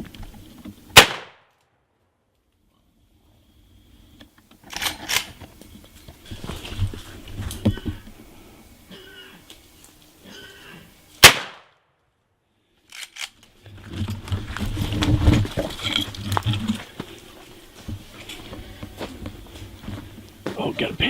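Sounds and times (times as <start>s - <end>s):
rifle shot: 1.0s - 1.5s, 11.2s - 11.8s
rough rustling noise: 1.6s - 11.3s, 12.8s - 21.0s.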